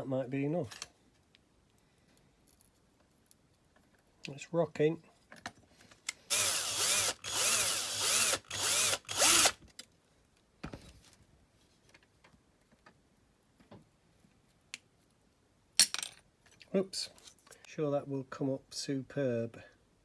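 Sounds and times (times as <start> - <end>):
small electric drill drilling metal: 6.2 - 9.6.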